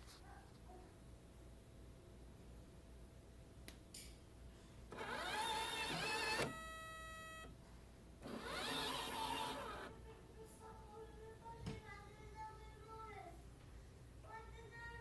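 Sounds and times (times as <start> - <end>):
machine motor whirring up: 4.9 - 7.5, 8.2 - 9.9.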